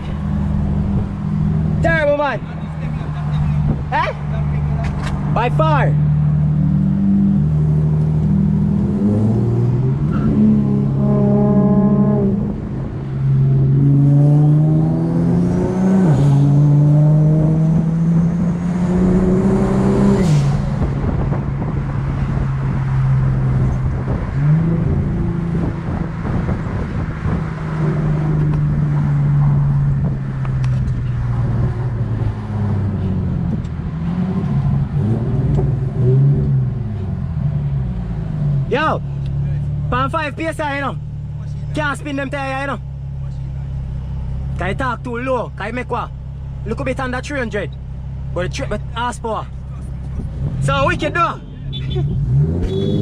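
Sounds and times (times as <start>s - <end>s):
car engine accelerating hard: 6.0s - 45.1s, 52.0s - 53.0s.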